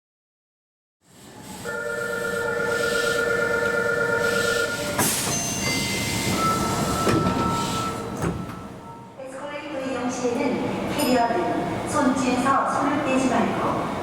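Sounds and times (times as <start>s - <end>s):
train background noise: 1.1s - 14.0s
two-tone door chime: 1.7s - 9.1s.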